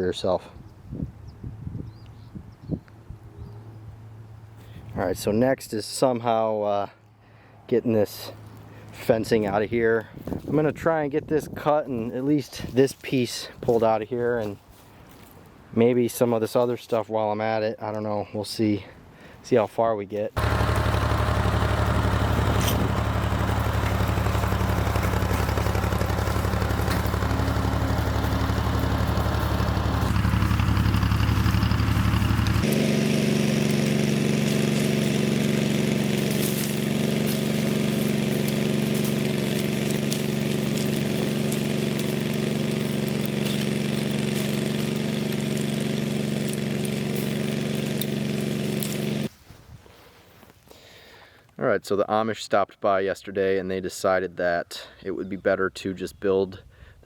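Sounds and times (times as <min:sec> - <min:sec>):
tractor engine running: 0:20.4 - 0:49.3.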